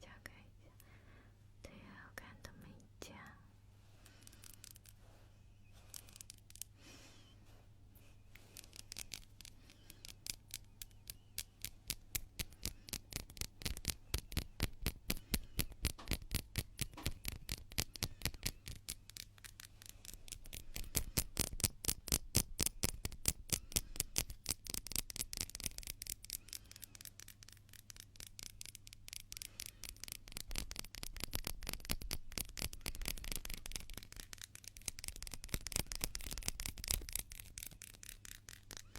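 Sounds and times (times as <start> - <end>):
hands rubbing together: 8.3 - 38.9.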